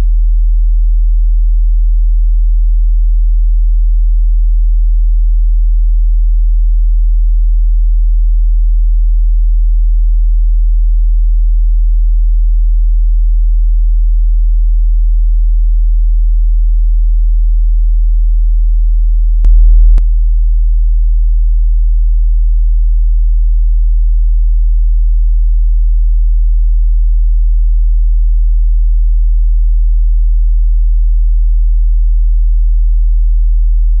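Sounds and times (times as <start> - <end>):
deep steady attention tone: 19.4 - 20.0.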